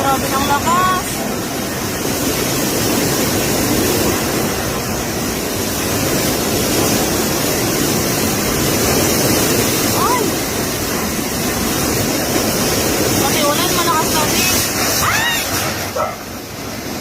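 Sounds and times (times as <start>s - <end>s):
driving rain: 0.0s - 17.0s
strong wind: 0.0s - 17.0s.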